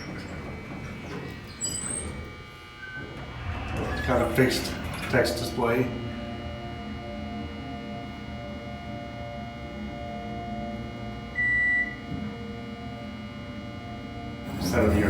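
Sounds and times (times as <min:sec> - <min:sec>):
electrical and ventilation hum: 0:00.0 - 0:15.0.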